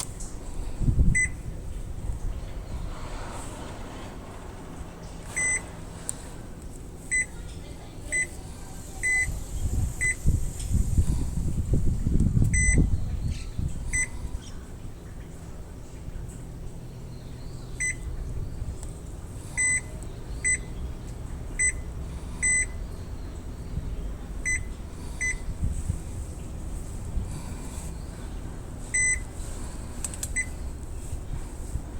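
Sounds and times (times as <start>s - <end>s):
washing machine high beeps: 0.9s - 1.6s, 5.2s - 6.0s, 7.0s - 10.6s, 12.5s - 14.4s, 17.7s - 18.7s, 19.6s - 25.8s, 28.8s - 29.4s, 30.3s - 30.6s.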